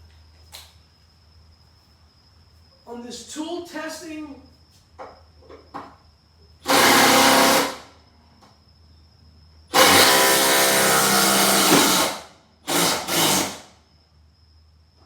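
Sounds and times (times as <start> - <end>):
cordless impact driver running: 6.7 - 7.8, 9.8 - 13.6.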